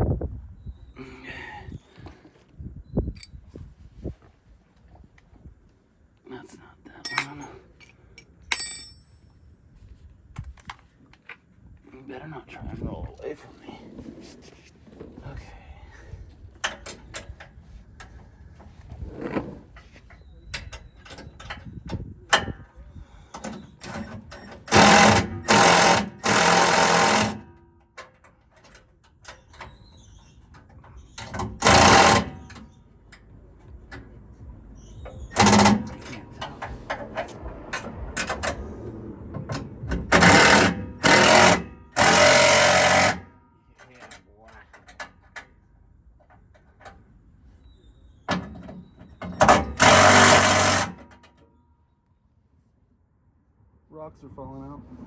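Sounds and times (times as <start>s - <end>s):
power tool bursts: 24.6s - 27.5s, 31.6s - 32.5s, 40.1s - 43.3s, 49.5s - 51.0s.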